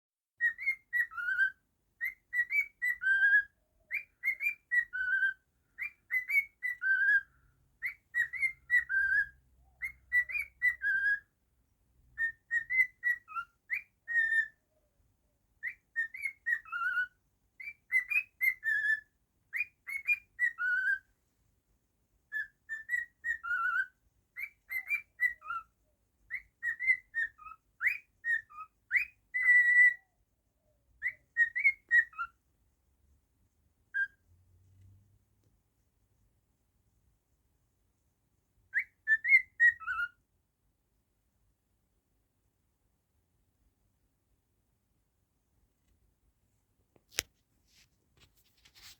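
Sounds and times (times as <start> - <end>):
cockatiel whistling a tune: 0.4 - 11.3, 12.1 - 14.6, 15.6 - 21.1, 22.3 - 25.7, 26.3 - 30.1, 30.9 - 32.4, 33.9 - 34.2, 38.7 - 40.2.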